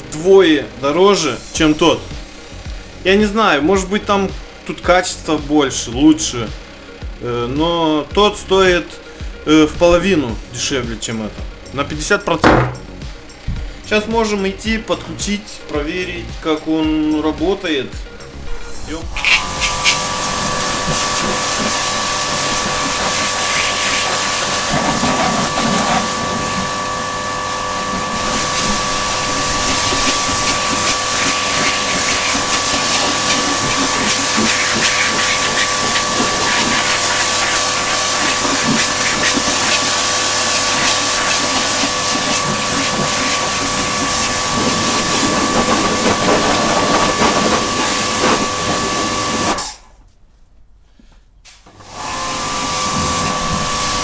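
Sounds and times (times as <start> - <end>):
pressure washer motor whine: 0.0 - 16.8, 17.4 - 49.8, 51.7 - 54.0
water jet hissing: 1.0 - 4.5, 18.3 - 49.8.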